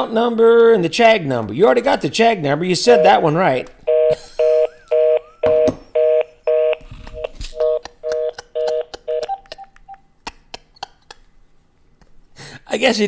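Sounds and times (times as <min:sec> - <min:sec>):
telephone busy tone: 0:02.9 - 0:03.3, 0:03.9 - 0:10.0.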